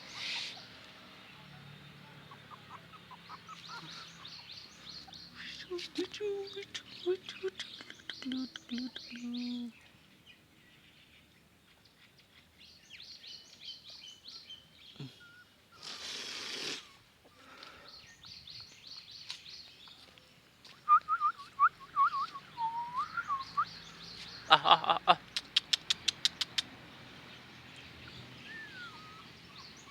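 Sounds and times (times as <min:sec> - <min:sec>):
puppies squeaking: 0:02.3 - 0:04.4, 0:25.4 - 0:26.6
rustling hiss: 0:15.7 - 0:17.8
sharp clicks: 0:25.4 - 0:26.7.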